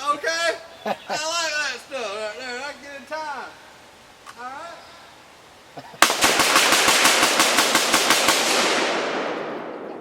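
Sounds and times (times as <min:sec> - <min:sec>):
rifle shot: 0:06.0 - 0:10.0.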